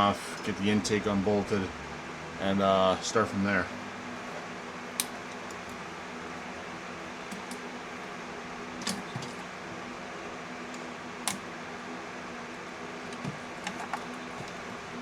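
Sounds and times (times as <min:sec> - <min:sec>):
steady mechanical hum: 0:00.0 - 0:15.0
sharp clicks of connectors unhooking: 0:05.0 - 0:05.8, 0:07.3 - 0:07.7, 0:08.8 - 0:09.4, 0:10.7 - 0:11.5.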